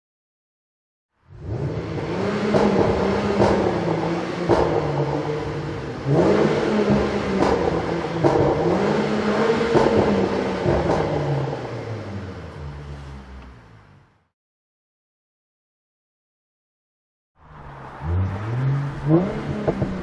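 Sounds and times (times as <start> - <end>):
car engine revving: 1.3 - 14.3, 17.4 - 20.0
exhaust pops and crackles: 2.5 - 8.9.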